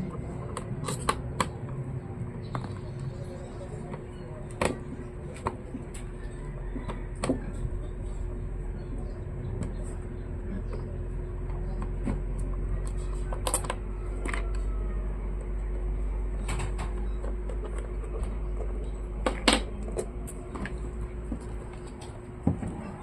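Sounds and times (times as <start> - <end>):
steady electrical hum: 0.0 - 23.0.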